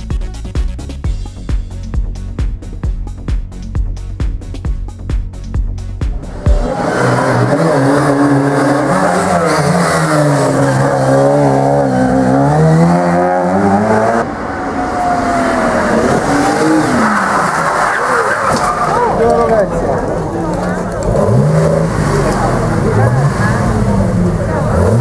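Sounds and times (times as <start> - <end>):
music with a beat: 0.0 - 7.3
race car engine revving: 1.3 - 25.0
tyre squealing: 6.2 - 13.4.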